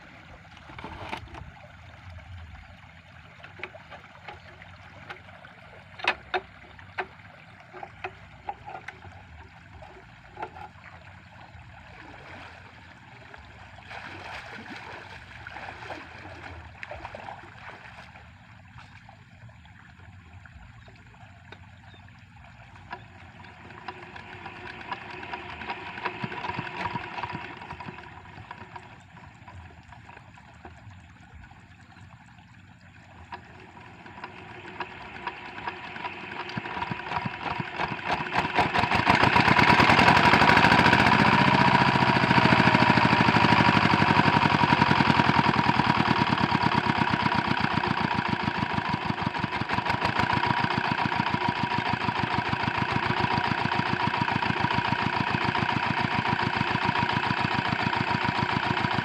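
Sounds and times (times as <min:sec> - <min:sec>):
diesel engine being hand-cranked: 0:00.0 - 0:01.9, 0:03.2 - 0:11.3, 0:22.8 - 0:31.0, 0:33.2 - 0:59.0.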